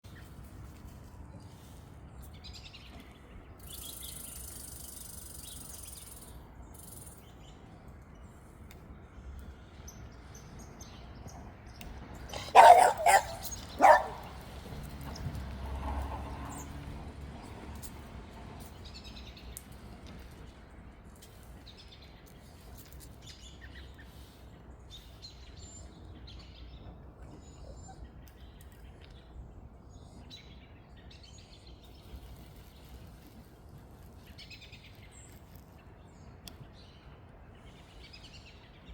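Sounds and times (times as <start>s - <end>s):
low outdoor rumble: 6.3s - 22.8s
birds chirping faintly: 9.3s - 14.4s.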